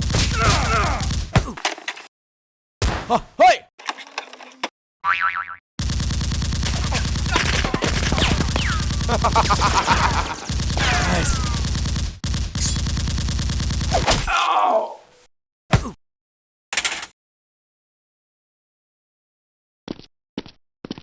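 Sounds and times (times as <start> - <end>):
rapid automatic gunfire: 5.8 - 14.1
falling groan-like cry: 10.8 - 11.6, 14.3 - 15.1.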